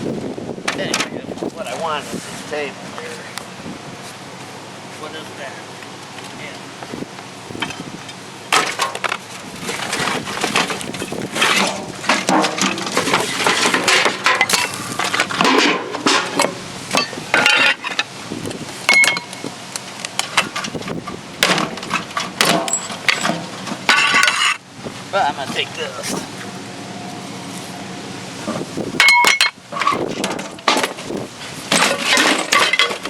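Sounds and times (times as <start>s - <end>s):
hard objects clattering and knocking: 8.5s - 18.1s, 18.9s - 19.5s, 20.1s - 24.6s, 28.5s - 33.0s
clinks: 11.0s - 18.1s, 18.9s - 19.5s, 21.4s - 24.6s, 29.0s - 31.0s.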